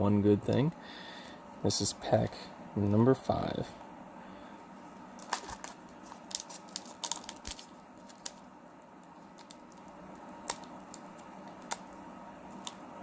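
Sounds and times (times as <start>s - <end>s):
foil wrapper crinkling and tearing: 5.2s - 11.9s.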